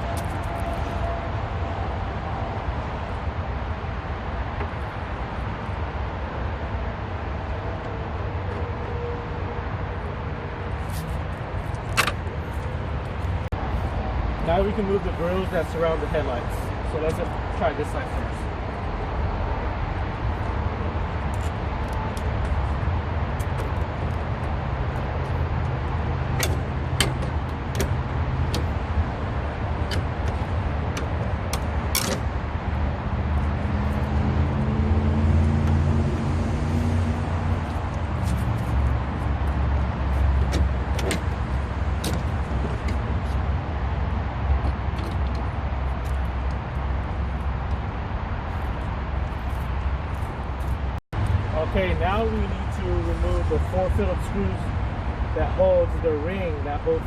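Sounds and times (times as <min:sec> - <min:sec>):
road traffic rumble: 0:00.0 - 0:57.0
vehicle passing by: 0:32.3 - 0:44.5.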